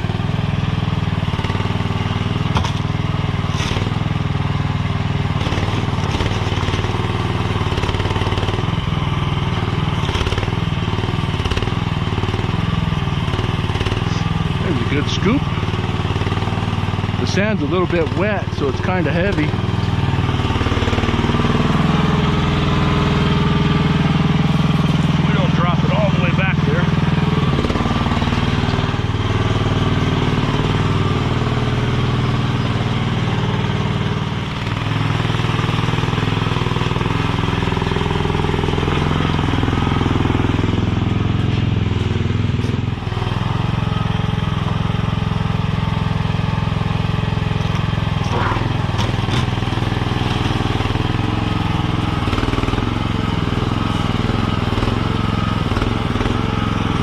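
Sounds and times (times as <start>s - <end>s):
skid steer engine running: 0.0s - 57.0s.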